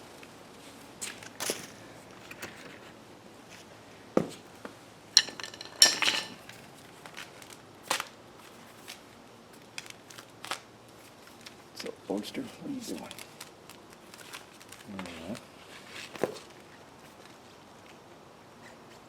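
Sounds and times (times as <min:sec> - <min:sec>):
metallic clink and clatter: 0:05.2 - 0:06.5.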